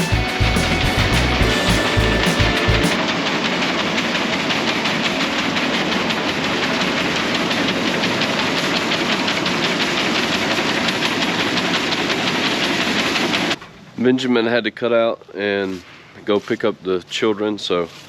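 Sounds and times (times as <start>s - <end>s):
machine running with fast rattle: 0.0s - 13.6s.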